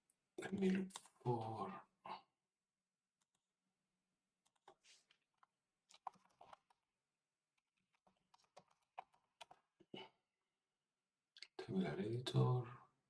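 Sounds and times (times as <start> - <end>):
faint keyboard typing: 4.4 - 6.9, 7.6 - 9.7.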